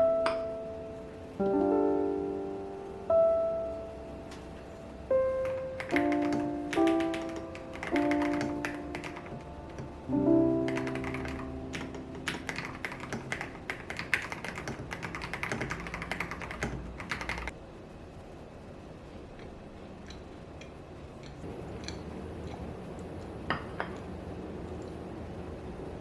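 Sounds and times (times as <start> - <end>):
piano music with sustained chords: 0.0 - 17.6
mechanical keyboard typing: 5.4 - 10.0, 10.6 - 17.5.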